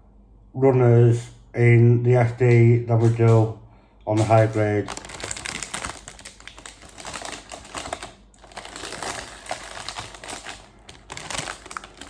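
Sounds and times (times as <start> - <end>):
plastic bags crinkling: 4.2 - 12.0
plastic parts clicking: 4.2 - 12.0.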